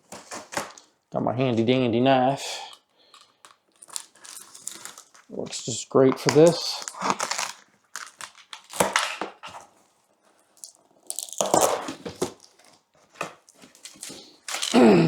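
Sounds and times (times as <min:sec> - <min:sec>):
cardboard box crinkling and tearing: 0:00.0 - 0:00.9, 0:03.7 - 0:09.9, 0:11.1 - 0:14.8.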